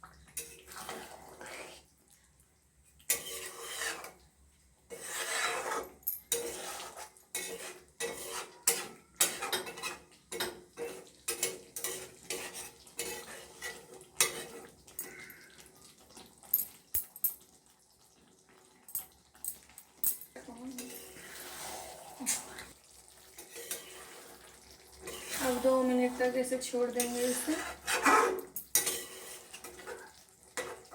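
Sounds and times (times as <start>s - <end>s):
spatula scraping a pan: 0.4s - 1.9s, 3.1s - 4.2s, 4.9s - 14.8s, 20.7s - 30.9s.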